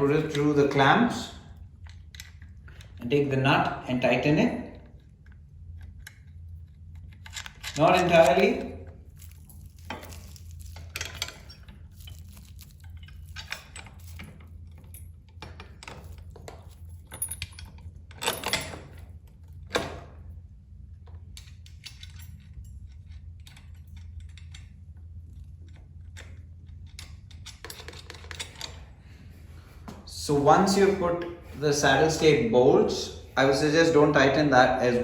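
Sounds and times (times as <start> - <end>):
metal tools clinking and rattling: 7.2 - 19.2, 21.4 - 24.8, 25.7 - 28.9.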